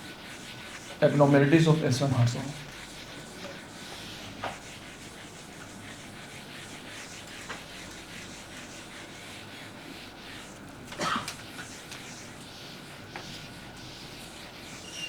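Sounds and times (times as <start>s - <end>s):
steady room hiss: 0.0s - 15.0s
writing scratching on a board: 0.0s - 15.0s.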